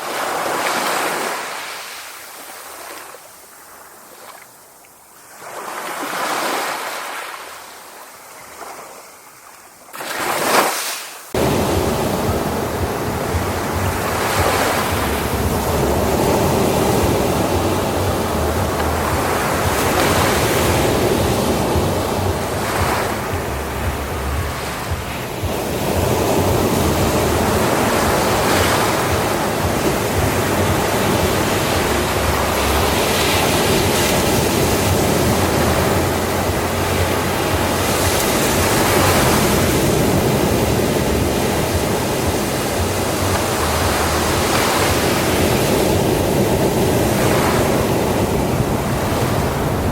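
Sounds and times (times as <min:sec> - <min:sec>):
sea waves breaking on beach: 0:00.0 - 0:49.9
low rumble of surf: 0:11.4 - 0:49.9.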